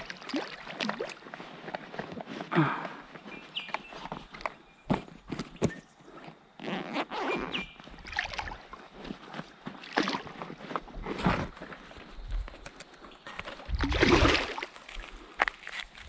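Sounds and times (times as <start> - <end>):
river water splashing: 0.0 - 1.4, 8.0 - 8.8, 9.8 - 10.4, 13.8 - 15.0.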